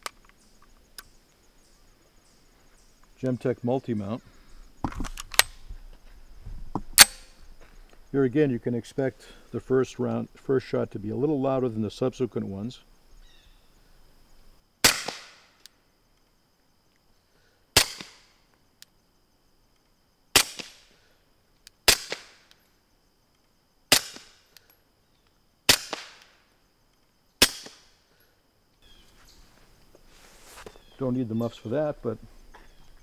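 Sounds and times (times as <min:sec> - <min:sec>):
suppressed pistol shots: 0:07.0 - 0:07.3, 0:14.8 - 0:15.5, 0:17.8 - 0:18.3, 0:21.9 - 0:22.4, 0:23.9 - 0:24.4, 0:25.7 - 0:26.3, 0:27.4 - 0:27.9.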